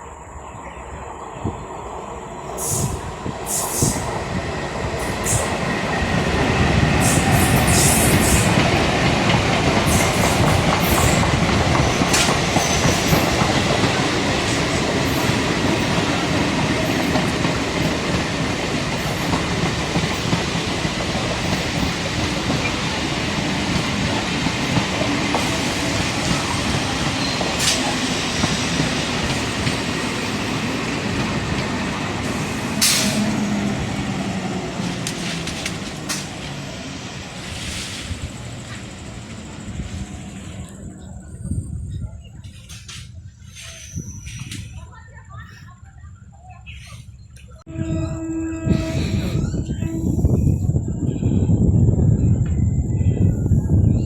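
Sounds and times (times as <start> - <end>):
train running on track: 0.0 - 54.0
wheels clicking over rail joints: 6.4 - 37.0.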